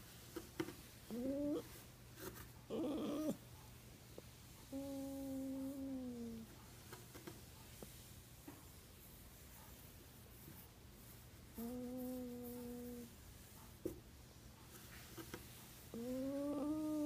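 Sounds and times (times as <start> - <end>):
dog moaning: 1.1 - 1.7, 2.7 - 3.4, 15.9 - 17.0.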